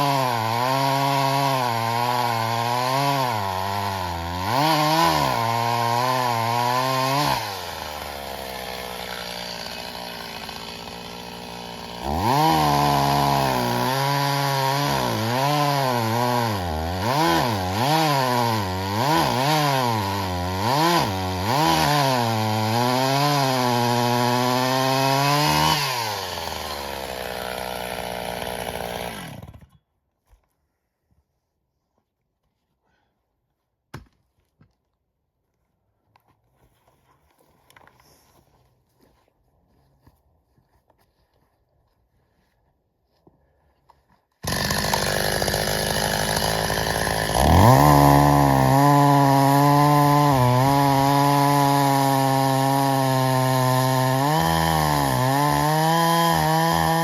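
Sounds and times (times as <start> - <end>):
chainsaw cutting logs: 0.0 - 29.9, 44.3 - 57.0.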